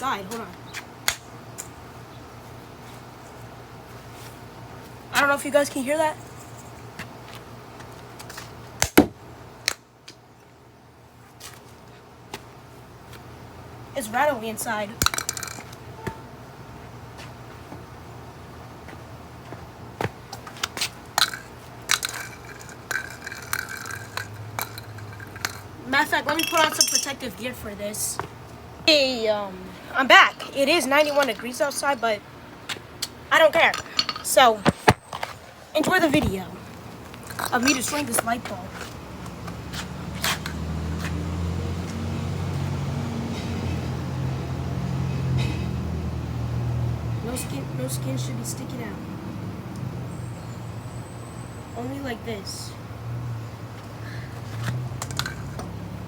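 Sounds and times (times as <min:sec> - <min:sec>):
broken bits rattling in glass: 0:21.2 - 0:25.7, 0:26.3 - 0:27.2.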